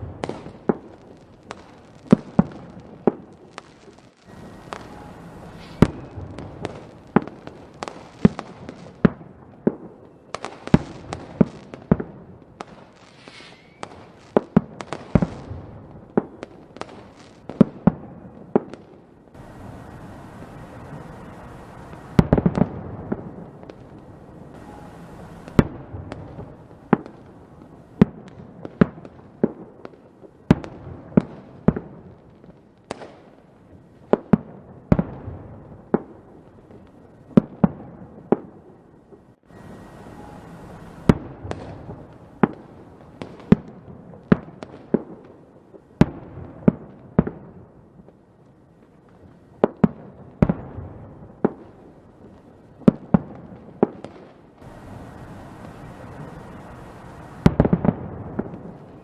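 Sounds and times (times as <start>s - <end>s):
fireworks bangs: 0.0s - 33.4s, 34.0s - 48.2s, 49.0s - 59.0s
steady hiss: 3.5s - 8.8s, 12.8s - 14.3s, 19.3s - 28.0s, 39.4s - 43.4s, 54.6s - 59.0s.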